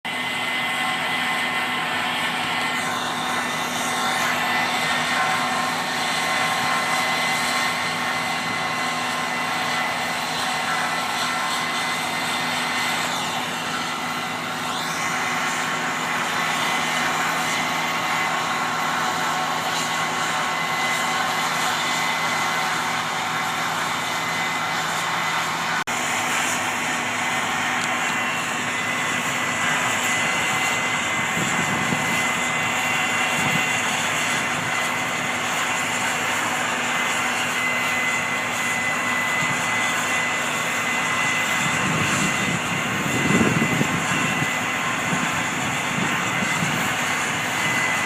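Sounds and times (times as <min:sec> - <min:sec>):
combine harvester running: 0:00.0 - 0:48.0.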